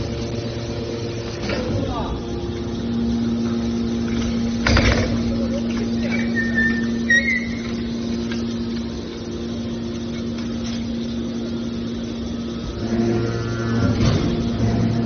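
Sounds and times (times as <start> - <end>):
hydraulic baler pump motor humming: 0.0 - 15.0
brief high squeak: 6.1 - 7.6.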